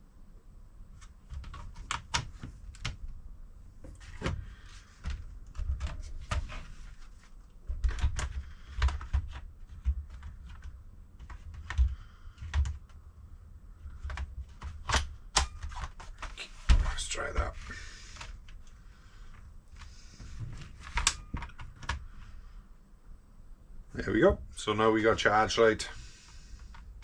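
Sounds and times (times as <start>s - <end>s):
laptop handling clicks and taps: 13.9s - 16.3s.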